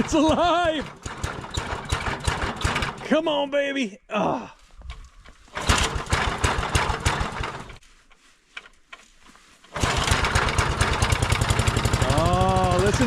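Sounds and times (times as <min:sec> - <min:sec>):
small gas engine running: 0:00.0 - 0:03.0, 0:05.5 - 0:07.8, 0:09.7 - 0:13.0.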